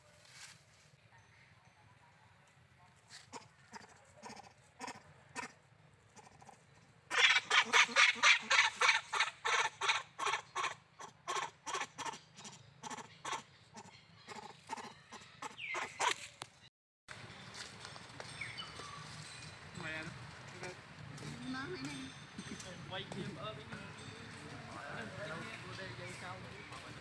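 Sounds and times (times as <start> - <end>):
monkey shrill cries: 3.3 - 5.6, 6.2 - 16.3.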